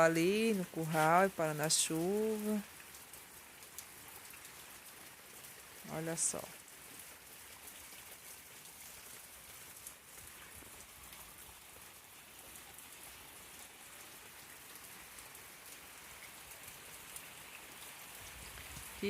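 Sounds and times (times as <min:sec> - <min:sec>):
steady rain: 0:00.0 - 0:19.0.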